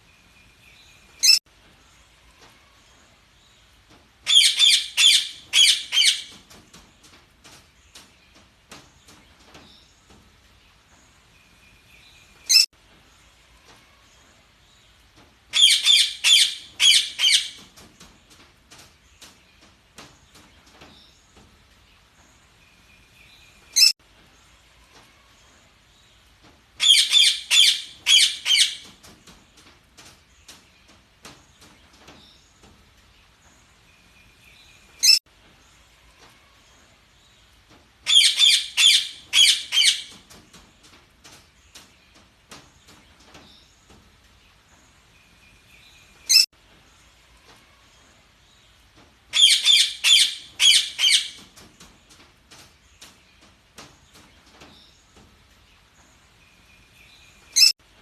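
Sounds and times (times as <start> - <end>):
budgerigars chirping: 49.4 - 51.4.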